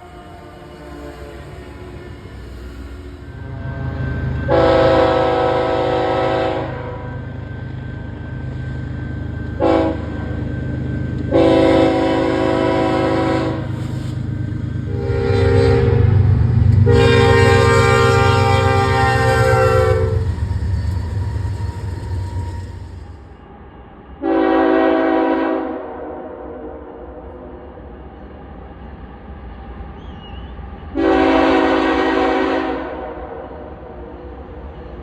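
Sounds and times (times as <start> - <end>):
low rumble of moving train: 0.0 - 35.0
locomotive air horn blasts: 4.4 - 7.2, 9.6 - 10.2, 11.3 - 13.8, 14.9 - 20.7, 24.2 - 26.6, 31.0 - 33.2.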